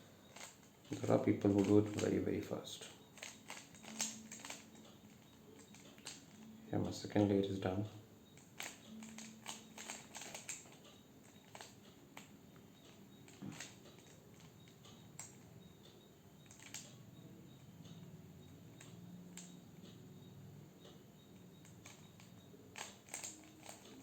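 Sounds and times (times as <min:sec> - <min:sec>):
puzzle cube clicking: 0:00.4 - 0:02.2, 0:03.1 - 0:06.5, 0:08.4 - 0:10.8, 0:11.4 - 0:12.3, 0:13.3 - 0:14.6, 0:16.4 - 0:16.9, 0:21.6 - 0:24.0.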